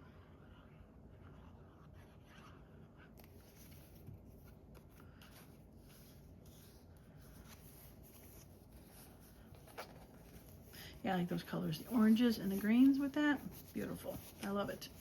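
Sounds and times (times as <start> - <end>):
paper rustling and scraping: 3.2 - 15.0.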